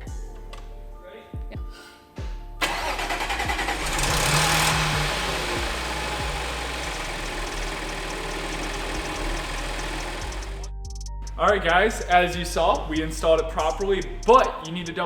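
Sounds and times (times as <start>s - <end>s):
car engine starting and idling: 2.6s - 10.7s
faint rapid ticking: 4.0s - 10.7s.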